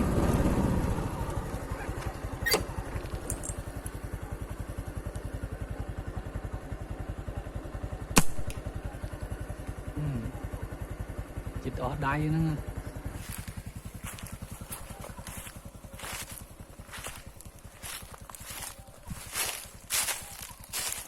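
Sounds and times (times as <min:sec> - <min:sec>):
small engine running: 0:00.0 - 0:21.0.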